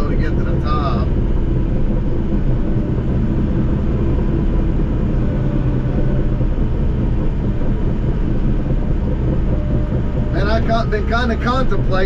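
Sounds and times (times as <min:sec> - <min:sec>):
bulldozer diesel engine under load: 0:00.0 - 0:12.0.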